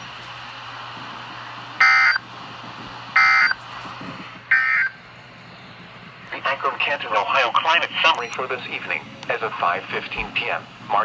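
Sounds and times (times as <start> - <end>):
radio hiss: 6.3 - 11.0.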